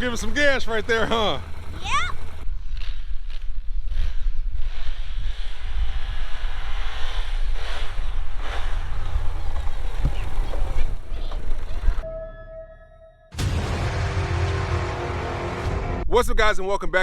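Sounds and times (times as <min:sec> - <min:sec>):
distant atv engine: 0:00.0 - 0:12.0.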